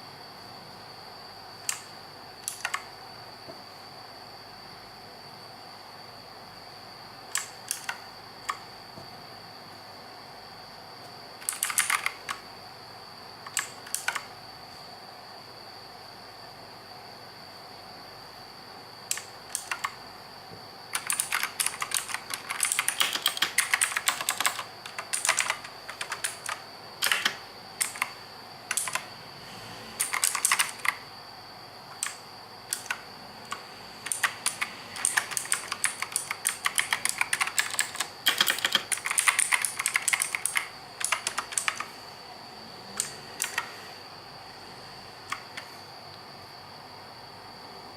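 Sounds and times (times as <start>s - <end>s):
faint high-pitched whine: 0.0s - 47.9s
mechanical keyboard clicking: 1.6s - 2.9s, 7.4s - 8.6s, 11.4s - 12.4s, 13.4s - 14.3s, 19.1s - 20.0s, 20.9s - 29.1s, 30.0s - 31.0s, 32.0s - 41.9s, 43.0s - 43.8s, 45.3s - 45.7s.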